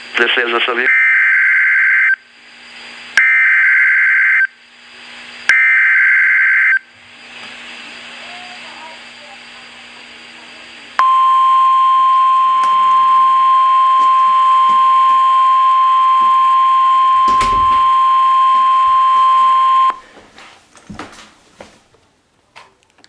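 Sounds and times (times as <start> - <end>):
radio hiss: 0.0 - 0.9
loud steady warning tone: 0.0 - 7.0, 7.7 - 20.0.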